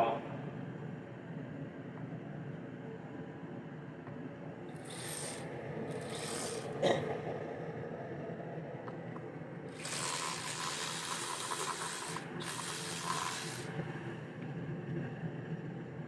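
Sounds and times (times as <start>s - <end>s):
steady low hum: 0.0s - 16.0s
hissing spray: 4.8s - 6.8s, 9.7s - 13.7s.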